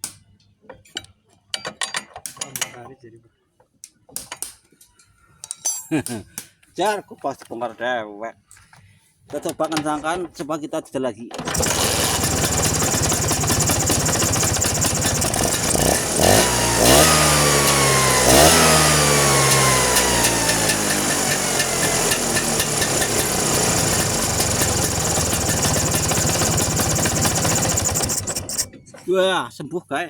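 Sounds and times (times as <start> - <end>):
scooter engine revving and idling: 11.4 - 28.8.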